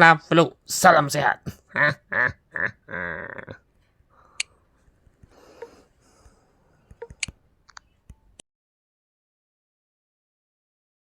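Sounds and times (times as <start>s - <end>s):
man speaking: 0.0s - 2.1s
faint clicks: 3.7s - 8.4s.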